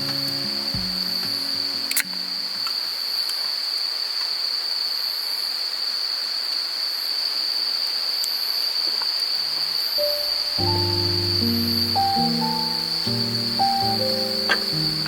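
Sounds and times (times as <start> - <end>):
crickets trilling: 0.0 - 15.0
soft hiss: 9.6 - 15.0.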